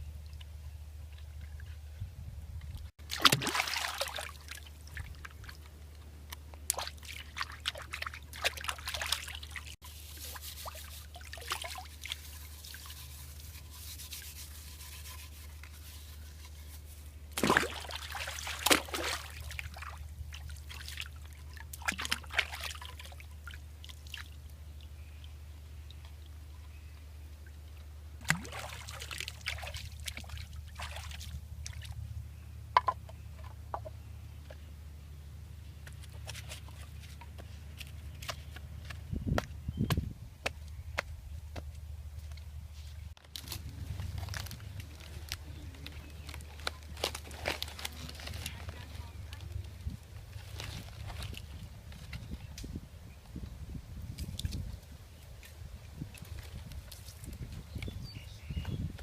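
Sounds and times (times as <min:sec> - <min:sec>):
water trickling and splashing: 0:02.6 - 0:26.4, 0:27.4 - 0:32.0.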